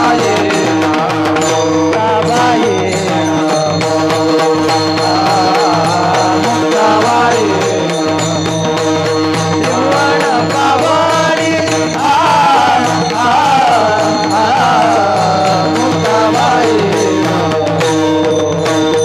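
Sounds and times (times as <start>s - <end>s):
hand drum beat: 0.0s - 19.0s
person singing melismatic runs: 9.5s - 17.7s.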